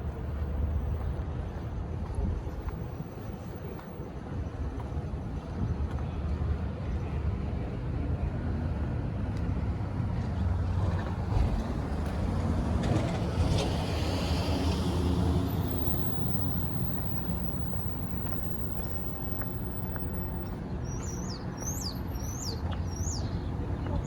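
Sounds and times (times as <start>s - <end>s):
low vehicle rumble: 0.0s - 24.0s
small birds chirping: 16.9s - 24.0s.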